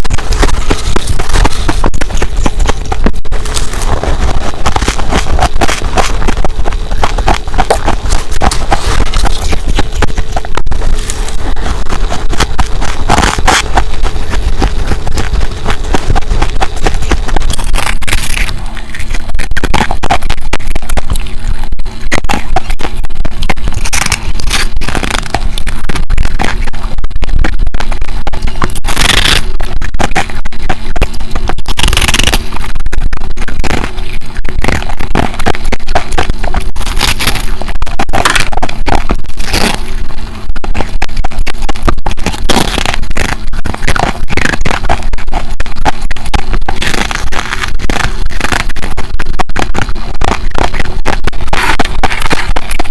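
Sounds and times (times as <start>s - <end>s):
ice being crunched: 0.0s - 20.4s, 23.7s - 25.8s, 28.7s - 30.2s, 31.7s - 32.6s, 33.7s - 40.0s, 42.2s - 45.0s, 46.6s - 48.8s.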